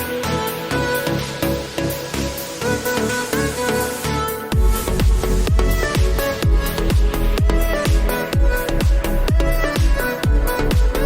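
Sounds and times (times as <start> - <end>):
electronic dance music: 0.0 - 11.0
held synth notes: 0.0 - 11.0
steady kick drum: 4.5 - 11.0.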